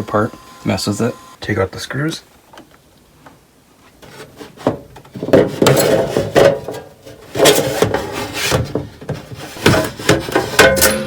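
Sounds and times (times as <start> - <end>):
plastic cover scraping and clattering: 3.9 - 11.0.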